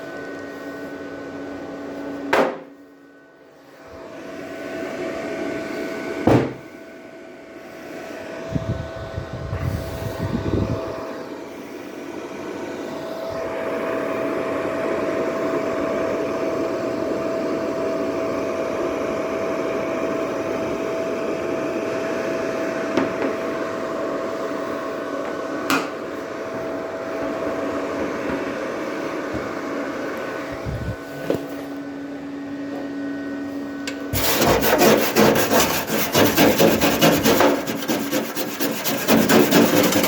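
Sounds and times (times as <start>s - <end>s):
dull knocks: 6.3s - 6.6s.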